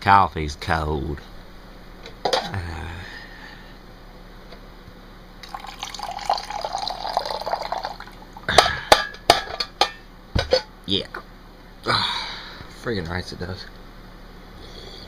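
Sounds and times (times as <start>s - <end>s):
liquid trickling and splashing: 5.4s - 8.2s.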